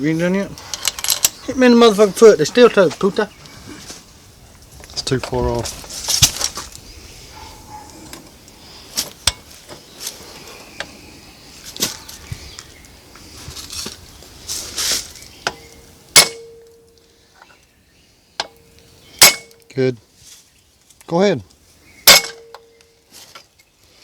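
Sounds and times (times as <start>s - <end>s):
sharp metal strike ringing: 15.6s - 16.8s, 22.1s - 22.6s.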